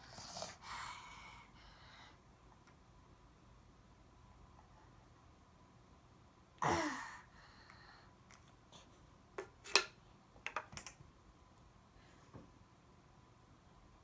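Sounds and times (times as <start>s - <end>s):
plastic tools tapping on table: 9.4s - 11.0s.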